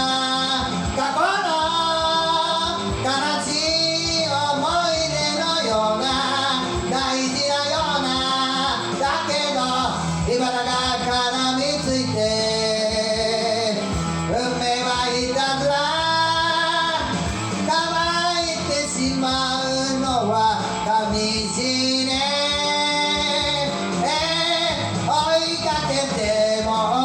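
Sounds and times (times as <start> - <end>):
person singing rock song: 0.0 - 27.0
rock backing track with guitar: 0.0 - 27.0.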